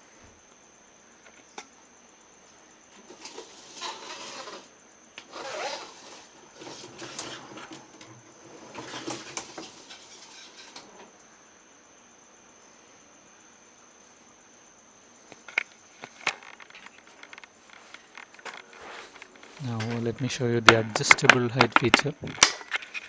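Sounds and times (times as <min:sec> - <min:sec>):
rubbing and scraping in dishwasher: 0:03.0 - 0:04.7, 0:05.3 - 0:11.1.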